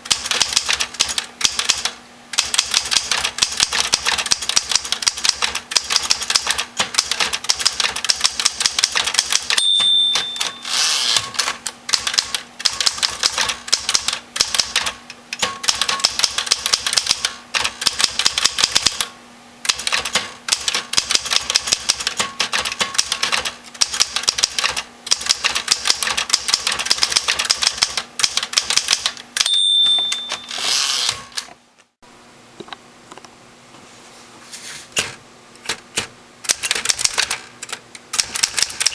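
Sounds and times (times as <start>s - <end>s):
typewriter carriage return rattle: 0.0s - 19.1s, 19.7s - 31.6s, 35.0s - 38.9s
typewriter key strikes: 0.0s - 19.1s, 19.7s - 30.8s, 35.7s - 38.9s
typewriter margin bell: 9.3s - 13.5s, 14.4s - 17.3s, 29.4s - 31.4s.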